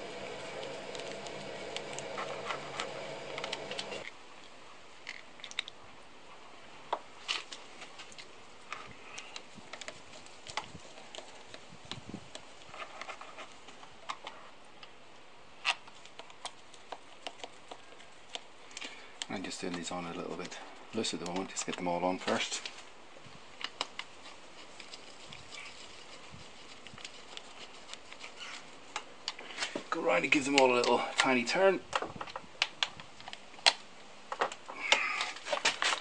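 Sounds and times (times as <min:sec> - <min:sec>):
steady hum: 0:00.0 - 0:04.0.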